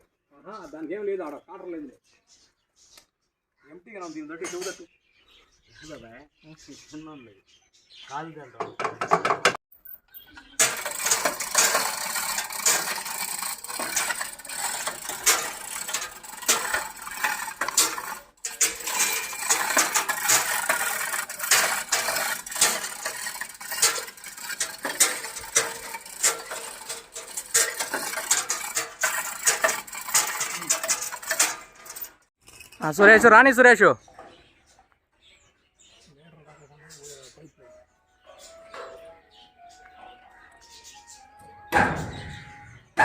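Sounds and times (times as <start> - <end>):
baler mechanism clattering: 10.5 - 33.4, 41.7 - 42.6.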